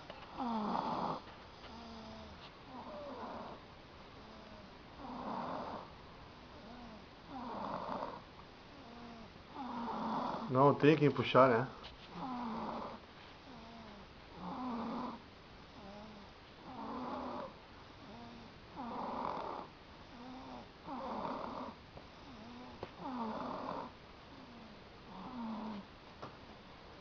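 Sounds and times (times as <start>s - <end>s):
soft breaths: 0.0s - 27.0s
person snoring: 0.3s - 3.6s, 4.2s - 5.9s, 6.6s - 8.2s, 8.8s - 10.5s, 12.2s - 15.2s, 15.8s - 23.9s.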